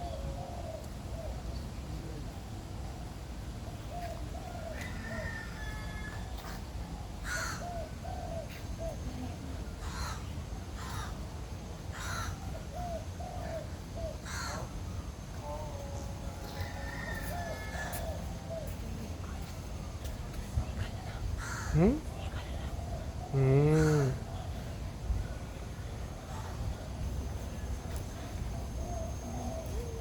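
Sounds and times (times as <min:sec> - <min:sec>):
harsh caw-like bird calls: 0:07.2 - 0:07.8, 0:09.8 - 0:11.2, 0:11.9 - 0:12.4, 0:14.2 - 0:14.7.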